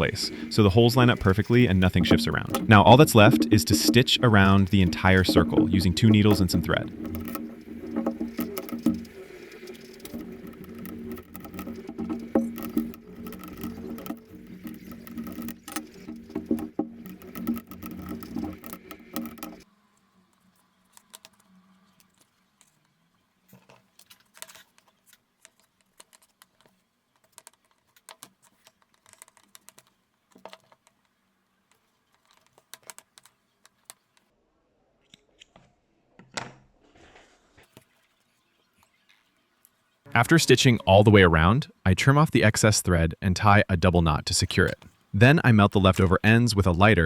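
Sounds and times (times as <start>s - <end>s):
dense clatter: 0.0s - 19.6s
needles clicking through leather: 0.0s - 19.6s.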